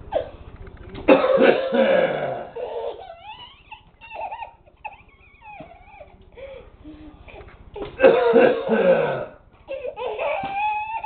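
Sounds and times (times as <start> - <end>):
man fake coughing: 1.1 - 2.6, 8.0 - 9.4
baby squealing and laughing: 2.5 - 6.2, 9.7 - 11.0.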